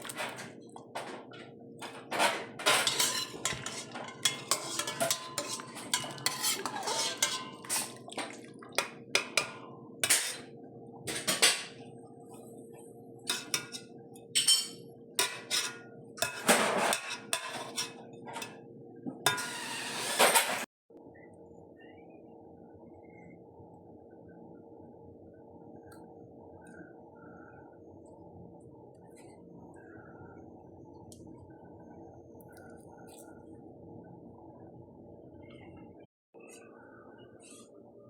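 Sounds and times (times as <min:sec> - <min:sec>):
utensils clinking against dishes: 0:00.0 - 0:10.5, 0:11.1 - 0:11.8, 0:13.3 - 0:18.6, 0:19.3 - 0:20.7
faint steady hum: 0:20.9 - 0:38.0.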